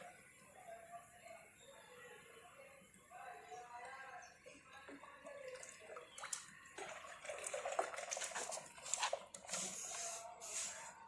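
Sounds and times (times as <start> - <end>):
water splashing and dripping: 4.4 - 10.1.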